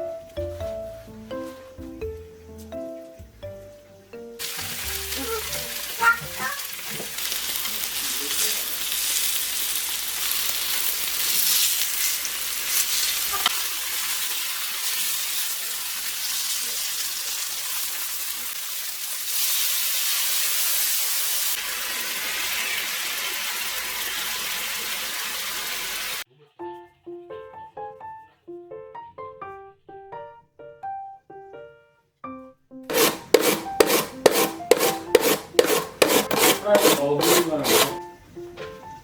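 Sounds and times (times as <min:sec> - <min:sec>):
food sizzling in hot oil: 0:04.4 - 0:26.3.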